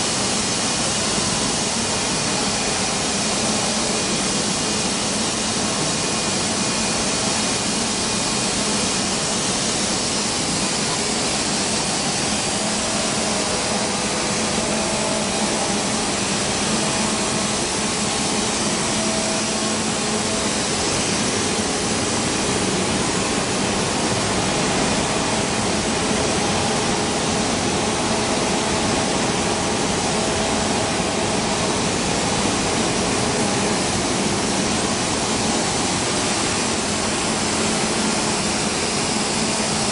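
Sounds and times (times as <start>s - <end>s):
machine rushing noise: 10.6s - 38.3s.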